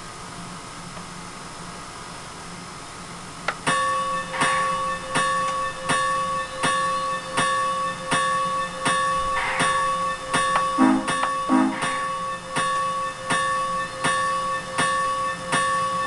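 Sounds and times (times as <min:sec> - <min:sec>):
steady high whine: 0:00.0 - 0:16.0
steam locomotive exhaust chuffs: 0:06.0 - 0:16.0.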